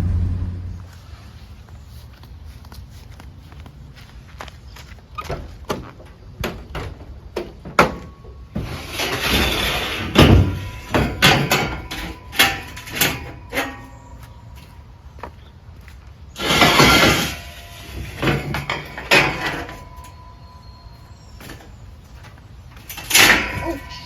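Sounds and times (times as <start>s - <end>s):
scraping rushing noise: 0.0s - 1.3s
sharp knocks and clunks: 5.3s - 14.3s.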